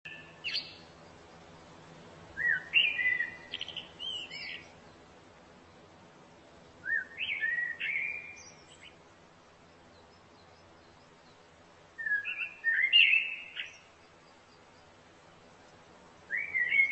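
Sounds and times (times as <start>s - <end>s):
songbird whistling: 0.1s - 0.8s, 2.4s - 4.7s, 6.8s - 9.0s, 12.0s - 13.9s, 16.3s - 16.9s.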